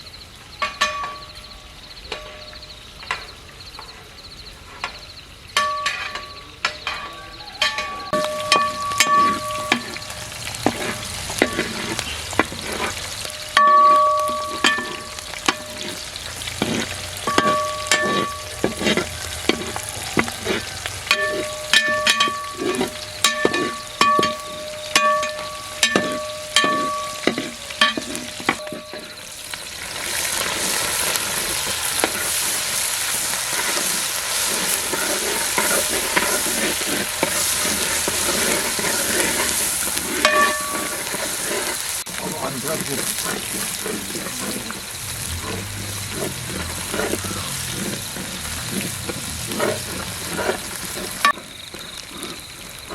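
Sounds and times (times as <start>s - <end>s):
food sizzling in pan: 4.5s - 52.9s
metal spoon stirring in pan: 4.7s - 52.9s.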